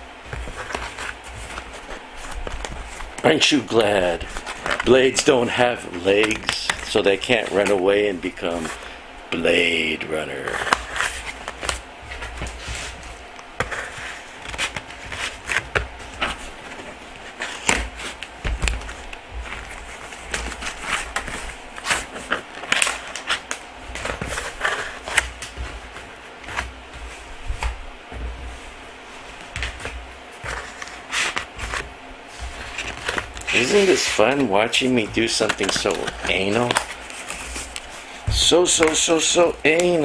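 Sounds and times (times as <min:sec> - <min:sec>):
cardboard box handling: 0:29.4 - 0:39.0.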